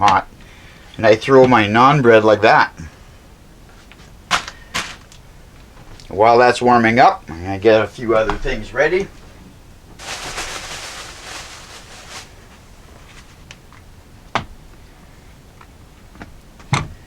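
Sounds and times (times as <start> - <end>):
rustling: 9.2 - 13.8.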